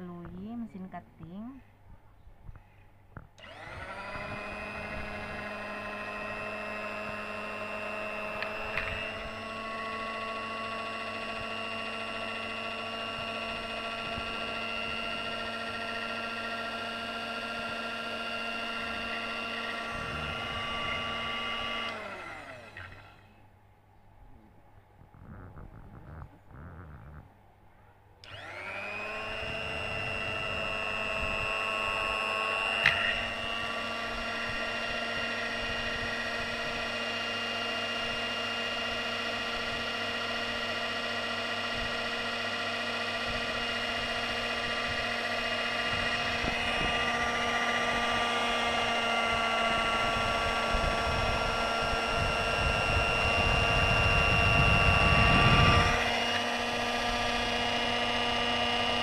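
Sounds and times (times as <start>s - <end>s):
cutting machine motor whine: 3.3s - 23.5s, 25.0s - 27.2s, 28.2s - 59.0s
blade cutting fabric: 3.4s - 23.4s, 25.1s - 27.2s, 28.2s - 59.0s.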